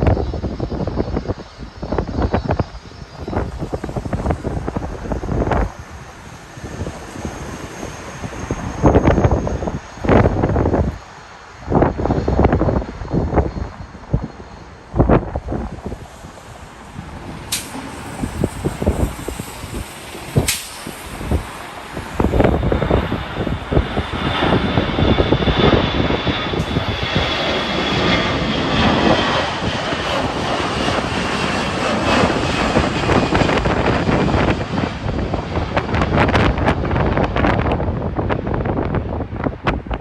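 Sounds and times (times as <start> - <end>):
jet engines roaring past: 0.0 - 40.0
wind buffeting microphone: 0.0 - 40.0.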